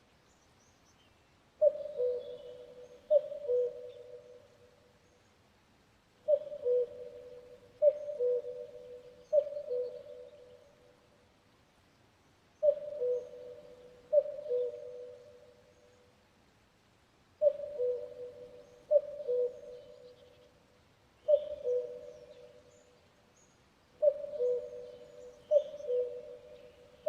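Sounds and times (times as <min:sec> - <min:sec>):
cuckoo calling: 0:01.6 - 0:04.5, 0:06.3 - 0:10.7, 0:12.6 - 0:15.6, 0:17.4 - 0:20.5, 0:21.2 - 0:23.0, 0:24.0 - 0:27.0
small birds chirping: 0:21.2 - 0:27.0.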